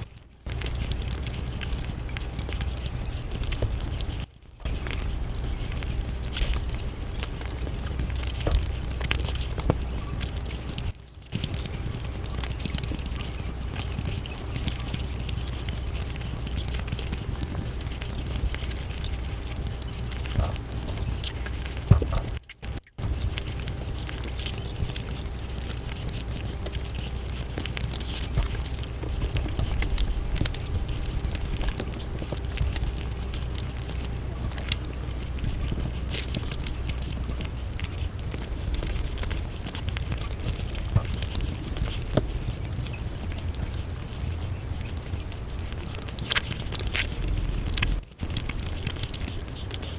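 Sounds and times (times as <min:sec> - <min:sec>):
steady low hum: 0:00.0 - 0:49.9
wet chewing and mouth clicks: 0:00.0 - 0:49.9.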